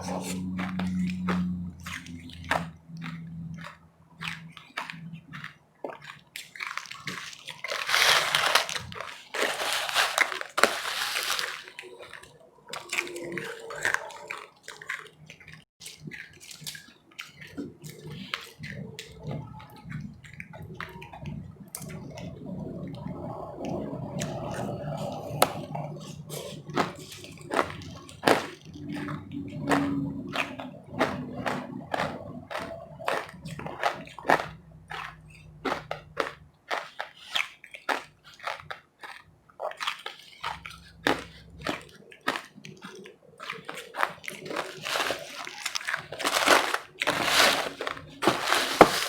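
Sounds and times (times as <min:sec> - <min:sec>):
crunching and chewing ice: 0:00.0 - 0:49.0
wet mouth sounds: 0:00.0 - 0:49.0.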